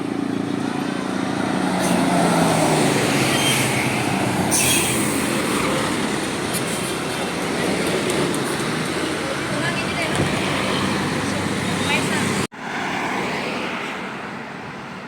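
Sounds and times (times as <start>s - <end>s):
bus engine and road noise: 0.0s - 15.0s.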